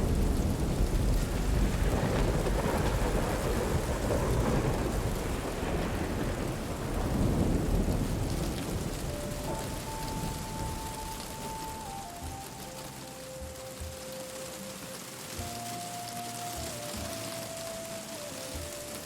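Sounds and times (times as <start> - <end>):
low rumble of thunder: 0.0 - 12.3
steady rain: 0.0 - 19.0.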